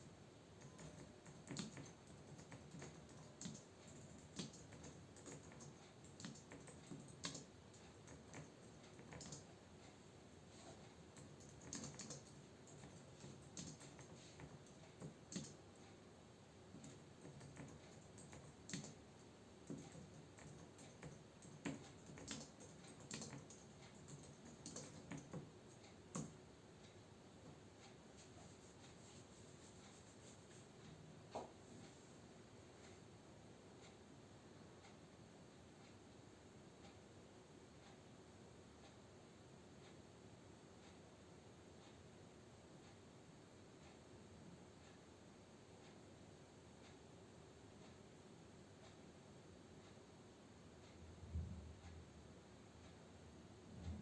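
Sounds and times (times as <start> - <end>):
typing on computer keyboard: 0.6 - 9.6, 11.1 - 15.8, 16.7 - 26.4.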